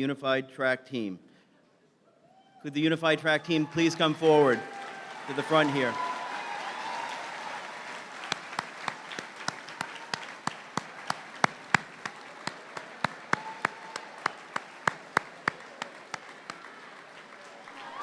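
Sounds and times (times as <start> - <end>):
audience applauding: 3.6 - 18.0
close sharp hand clapping: 4.4 - 18.0.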